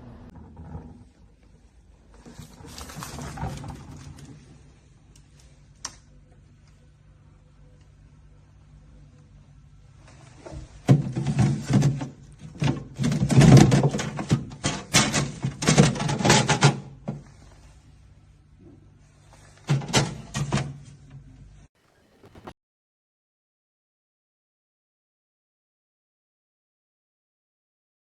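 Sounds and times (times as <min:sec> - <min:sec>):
fridge door and shelves rattling: 0:02.2 - 0:04.8, 0:10.5 - 0:17.2, 0:19.7 - 0:21.0.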